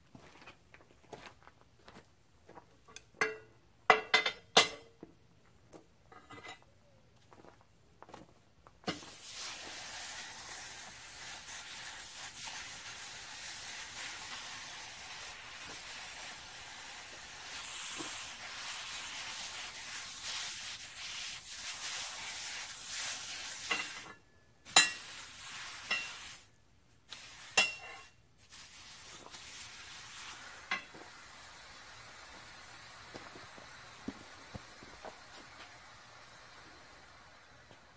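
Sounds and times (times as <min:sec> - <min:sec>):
welding arc sizzling: 0:08.9 - 0:37.9.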